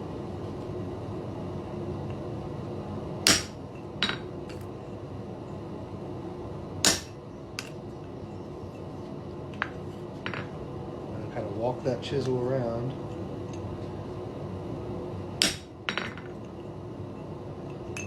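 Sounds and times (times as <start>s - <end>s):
steady hum: 0.0s - 18.0s
hammer striking chisel on iron: 3.3s - 4.6s, 6.8s - 7.7s, 15.4s - 16.2s.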